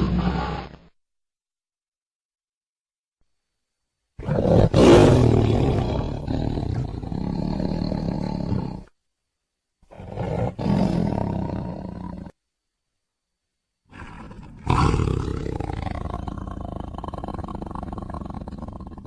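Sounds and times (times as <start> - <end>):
tiger roaring: 0.0 - 0.8, 4.2 - 8.9, 9.9 - 12.4, 13.9 - 19.0.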